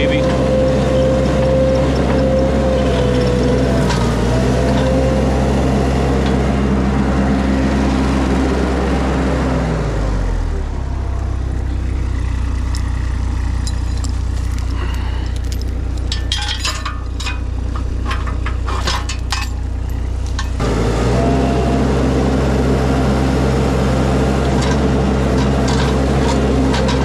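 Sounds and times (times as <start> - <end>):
skid steer engine running: 0.0 - 27.0
sharp cracks and clinks: 13.5 - 20.6.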